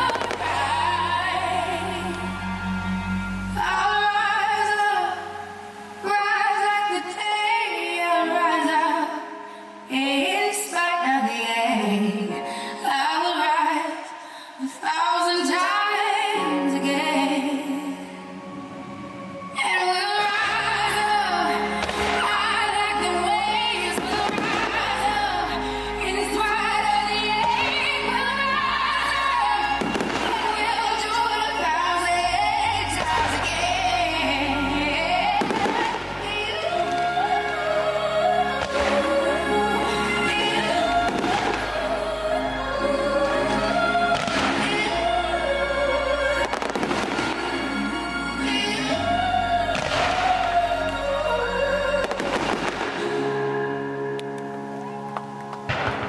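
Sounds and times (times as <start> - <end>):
firework bursts: 0.0 - 1.5, 24.0 - 25.4, 29.1 - 31.8, 52.1 - 53.2
woman singing with vibrato: 0.0 - 54.2
music: 0.0 - 56.0.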